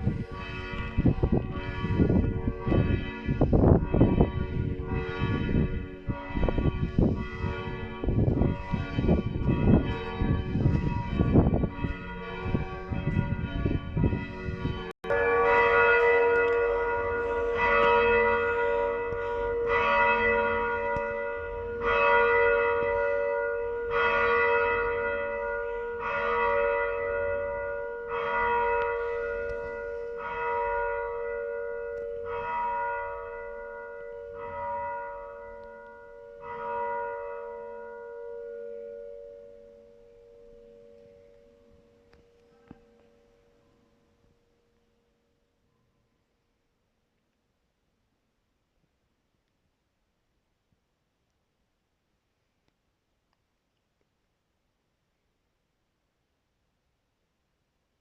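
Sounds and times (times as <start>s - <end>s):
church bells ringing: 0.0s - 44.4s.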